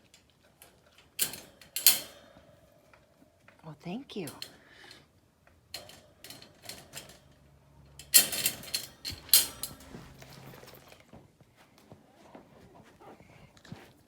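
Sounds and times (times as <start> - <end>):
dog crate latch clicking and rattling: 0.6 - 2.4, 5.7 - 10.0
metal crate door clanking: 1.0 - 2.6, 5.8 - 7.4, 8.0 - 10.4.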